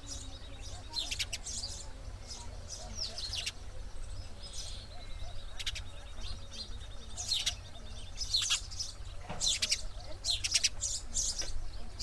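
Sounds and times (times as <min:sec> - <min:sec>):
sparrow chirping: 0:00.0 - 0:12.0.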